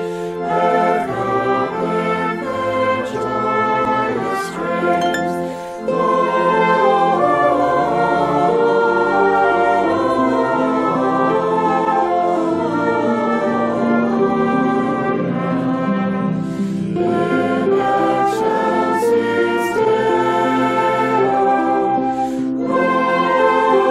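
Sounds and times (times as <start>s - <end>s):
instrumental ensemble sustained chords: 4.1s - 9.3s.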